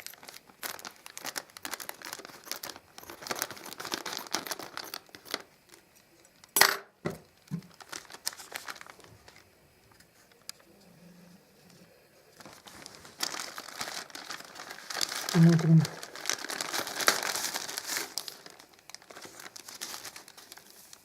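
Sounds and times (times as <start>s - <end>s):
plastic crinkling and tearing: 0.0s - 5.9s, 7.3s - 9.5s, 12.4s - 21.0s.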